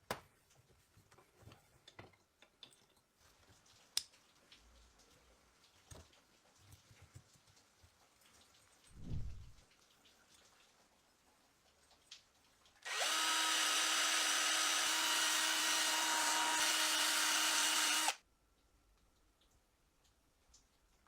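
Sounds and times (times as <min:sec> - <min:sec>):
handheld power tool spinning: 0:12.9 - 0:18.2.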